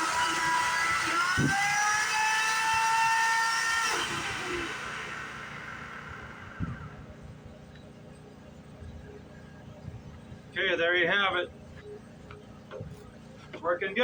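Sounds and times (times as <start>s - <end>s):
electric chainsaw motor whining: 0.0s - 7.1s.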